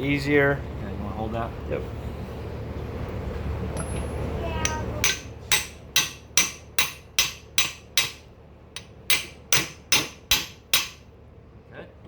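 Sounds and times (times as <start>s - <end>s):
hammer tapping on metal: 4.6s - 11.0s.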